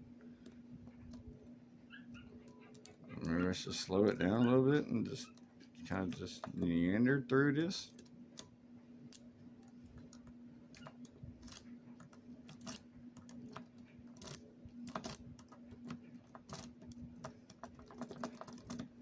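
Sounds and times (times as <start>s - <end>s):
steady low hum: 0.0s - 19.0s
lock pick clicking and scraping: 9.9s - 18.9s.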